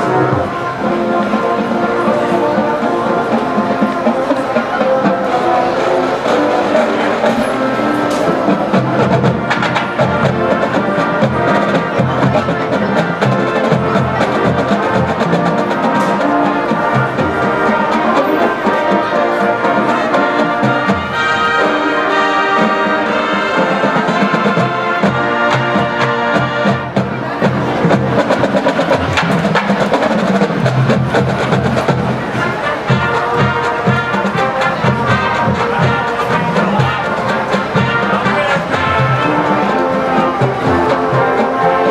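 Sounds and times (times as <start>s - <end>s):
brass horns: 0.0s - 41.9s
marching drums: 0.0s - 41.9s.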